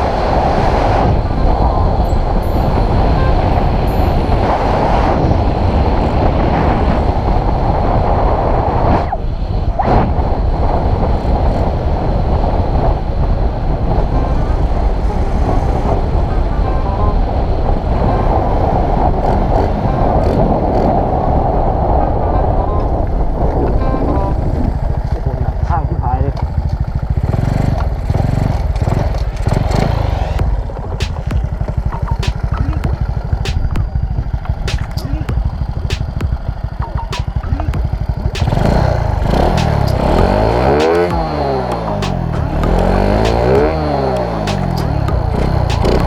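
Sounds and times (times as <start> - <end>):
road noise: 0.0 - 46.0
motorcycle engine running: 23.8 - 46.0.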